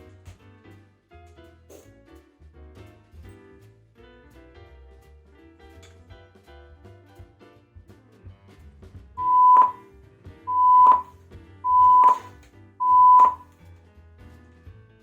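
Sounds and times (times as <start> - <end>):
faint background music: 0.0 - 15.0
test tone beeps: 9.2 - 9.8, 10.5 - 11.1, 11.7 - 13.4.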